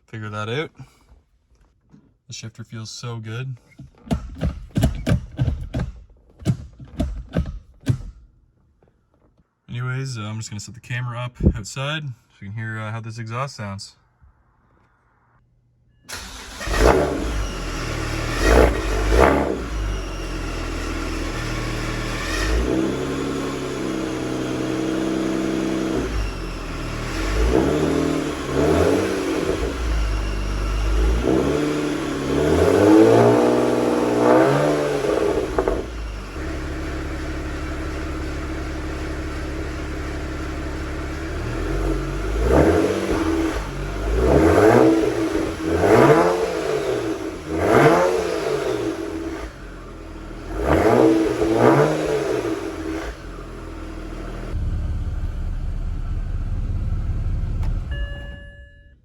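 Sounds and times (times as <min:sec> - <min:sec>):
car engine revving and idling: 0:16.1 - 0:58.4.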